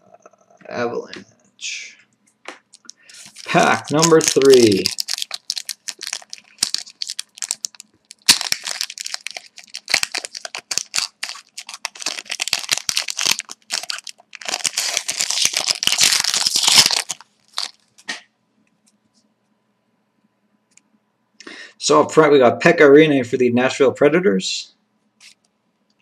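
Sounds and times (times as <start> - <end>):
wrapper tearing and crinkling: 2.7 - 18.1.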